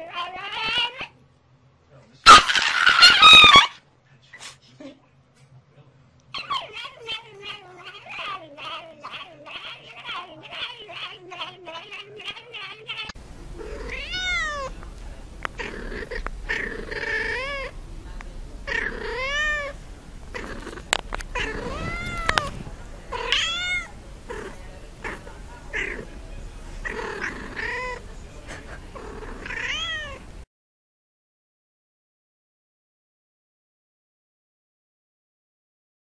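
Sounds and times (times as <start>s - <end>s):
cat meowing: 0.0s - 1.1s, 6.4s - 14.7s, 15.6s - 17.7s, 18.7s - 19.8s, 21.3s - 23.9s, 26.9s - 28.0s, 29.1s - 30.2s.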